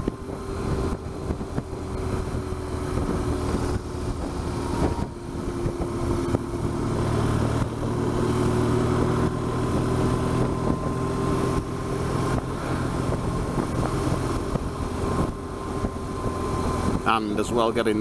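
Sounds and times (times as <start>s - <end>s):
motorcycle engine cruising: 0.0s - 18.0s
wind rush over microphone: 0.0s - 18.0s.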